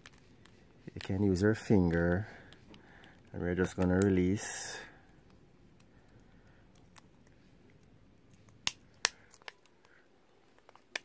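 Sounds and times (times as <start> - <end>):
plastic clicks: 7.8 - 11.0.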